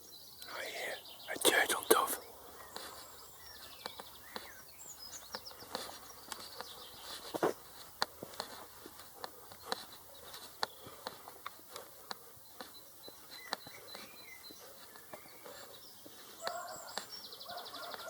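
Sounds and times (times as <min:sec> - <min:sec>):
songbirds chirping: 0:00.0 - 0:18.0.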